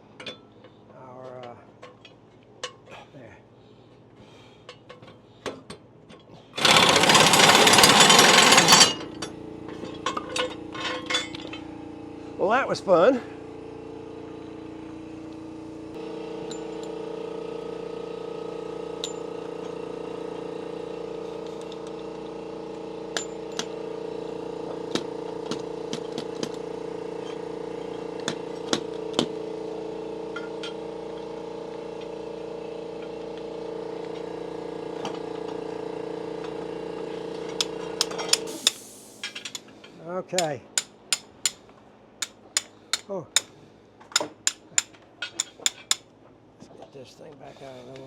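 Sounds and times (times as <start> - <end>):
tools clinking on metal: 4.7 - 11.7
machine humming: 6.6 - 9.0.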